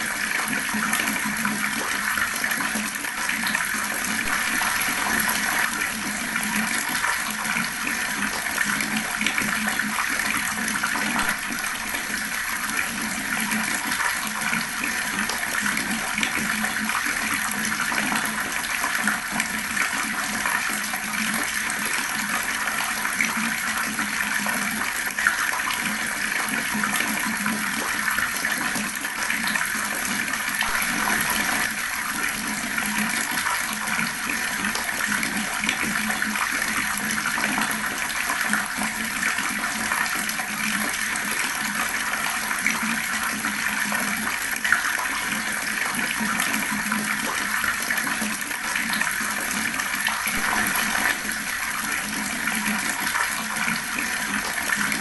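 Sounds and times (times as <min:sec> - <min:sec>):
water rushing: 0:03.3 - 0:07.6, 0:10.7 - 0:12.5, 0:30.5 - 0:33.7, 0:50.0 - 0:54.2.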